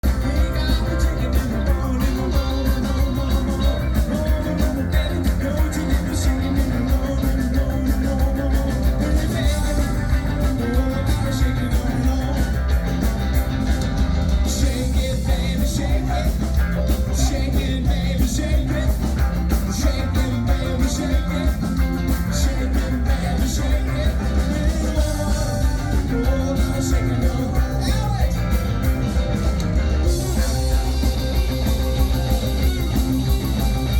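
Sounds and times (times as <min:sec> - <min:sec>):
live rock band playing: 0:00.0 - 0:33.9.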